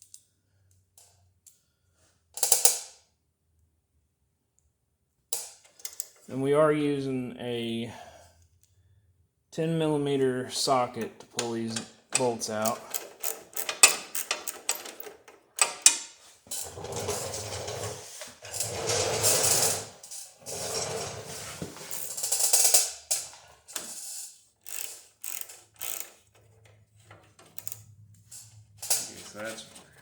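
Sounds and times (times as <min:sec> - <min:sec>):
hand ratchet clicking: 0:11.3 - 0:16.1, 0:23.8 - 0:26.4, 0:27.4 - 0:29.1.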